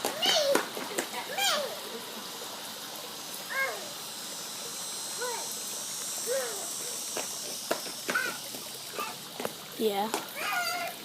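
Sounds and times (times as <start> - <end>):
insects buzzing high-pitched: 2.7 - 9.2.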